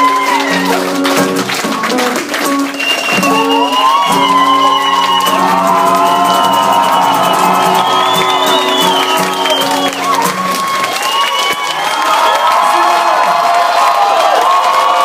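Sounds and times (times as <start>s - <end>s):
crowd shouting: 0.0s - 1.0s, 3.3s - 15.0s
live rock band playing: 0.0s - 11.2s.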